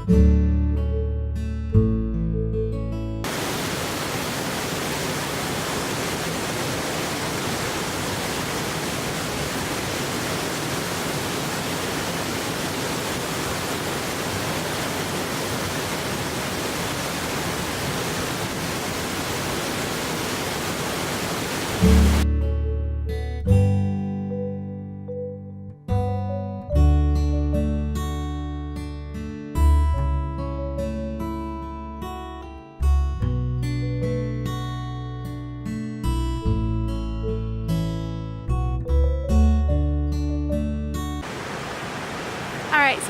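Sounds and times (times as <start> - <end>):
waterfall roaring: 3.3 - 22.2, 41.2 - 43.0.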